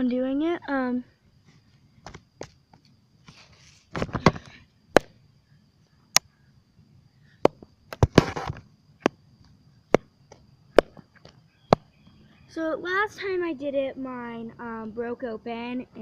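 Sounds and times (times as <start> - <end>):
cloth ball slapping on concrete: 9.9 - 11.9.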